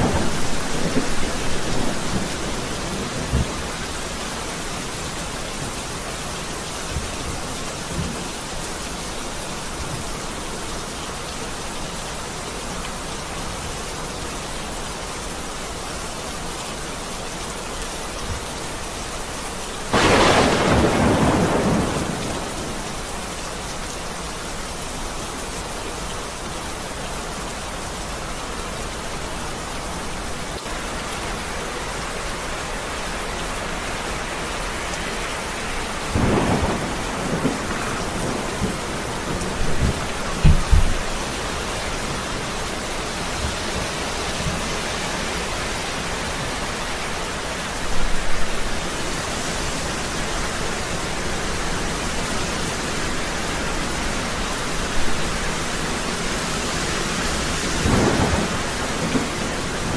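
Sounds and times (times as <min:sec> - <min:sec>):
steady rain falling: 0:00.0 - 0:59.9
loud thunder clap: 0:19.9 - 0:22.8.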